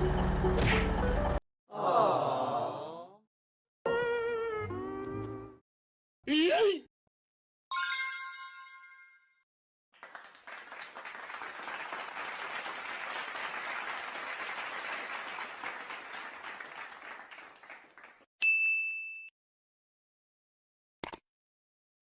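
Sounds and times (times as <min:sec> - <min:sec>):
bell-like ding: 0:07.7 - 0:09.4, 0:18.4 - 0:19.3
applause-like clapping: 0:09.9 - 0:18.3
short high ding: 0:18.4 - 0:19.3.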